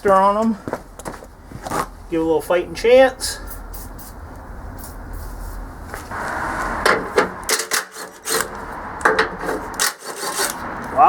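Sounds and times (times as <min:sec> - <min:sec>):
hand tools scraping: 0:04.8 - 0:11.0.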